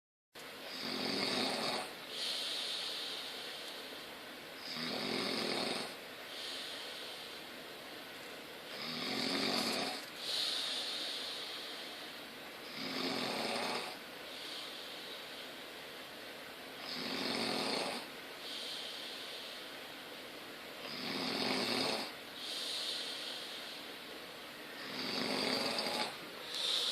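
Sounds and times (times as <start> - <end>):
breathy hiss: 0.6 - 8.1, 8.7 - 26.9
person snoring: 0.7 - 3.6, 4.6 - 7.4, 8.7 - 11.8, 12.6 - 14.8, 16.8 - 19.5, 20.8 - 23.9, 24.8 - 26.9.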